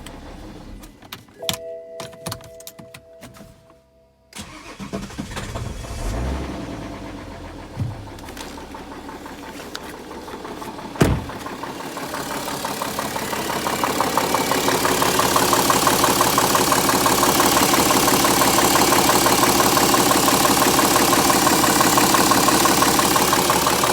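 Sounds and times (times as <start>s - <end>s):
diesel engine idling with knock: 6.6s - 23.9s
sharp thump: 11.0s - 11.5s.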